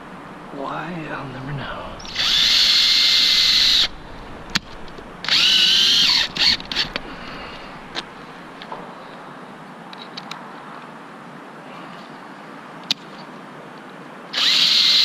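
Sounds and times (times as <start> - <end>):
power drill whining: 2.0 - 4.0, 5.2 - 8.0, 14.4 - 15.0.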